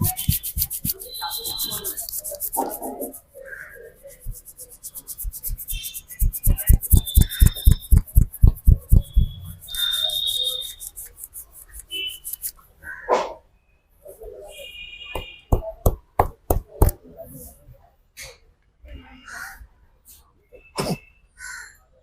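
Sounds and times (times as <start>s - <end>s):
hands drumming on head: 0.0s - 2.9s, 4.2s - 9.4s, 15.5s - 17.0s
hands rubbing on skin and hair: 0.0s - 12.6s.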